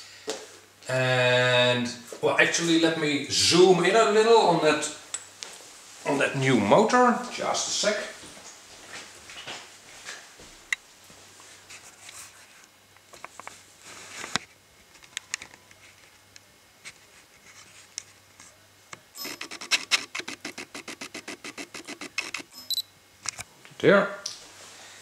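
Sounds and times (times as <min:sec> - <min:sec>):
rubbing and scratching: 0:16.8 - 0:18.6, 0:19.2 - 0:22.5.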